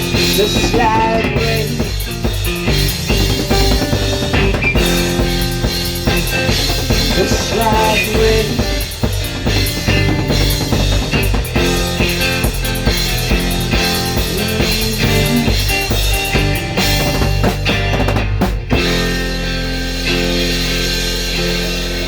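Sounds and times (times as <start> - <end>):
rock drums: 0.0 - 22.0
electric guitar chord ringing: 18.7 - 22.0.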